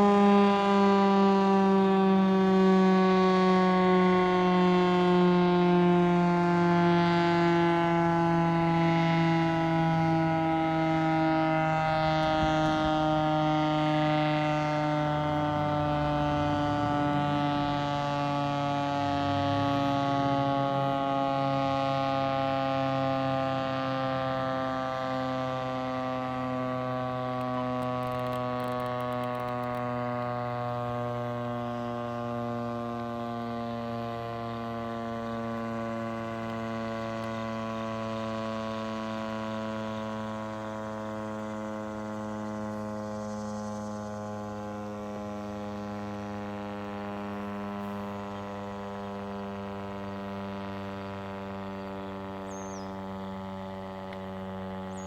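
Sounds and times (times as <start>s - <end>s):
warning siren winding down: 0.0s - 55.0s.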